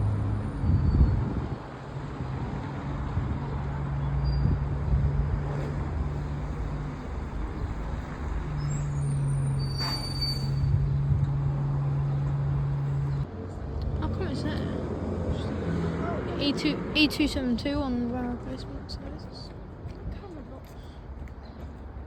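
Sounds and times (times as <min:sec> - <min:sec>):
bus engine idling: 0:05.7 - 0:13.3.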